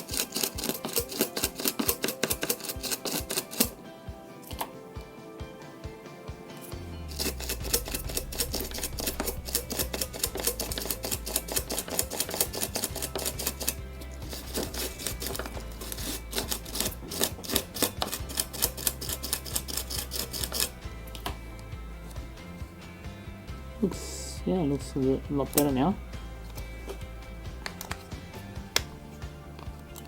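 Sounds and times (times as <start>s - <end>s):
brush scrubbing metal: 0.0s - 3.8s, 7.1s - 20.8s
background music: 0.0s - 30.0s.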